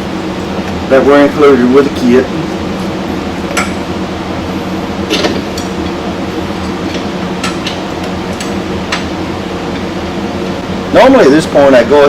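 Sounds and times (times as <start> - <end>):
machine hum: 0.0 - 12.0.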